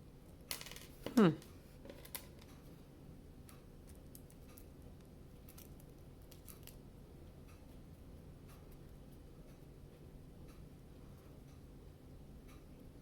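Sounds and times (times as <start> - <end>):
low room noise: 0.0 - 13.0.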